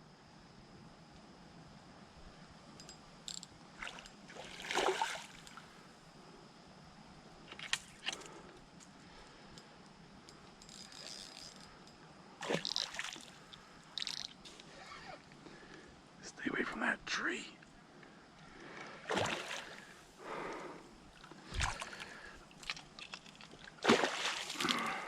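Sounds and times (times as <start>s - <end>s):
water splashes: 3.8s - 5.4s, 12.4s - 13.3s, 19.0s - 19.9s, 21.5s - 22.8s, 23.6s - 25.0s
fishing reel clicks: 10.6s - 11.7s, 13.9s - 14.4s.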